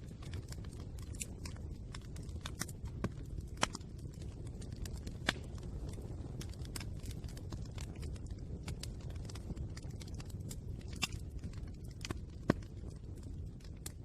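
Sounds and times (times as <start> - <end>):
fire pops and snaps: 0.0 - 14.0
low steady fire rumble: 0.0 - 14.0.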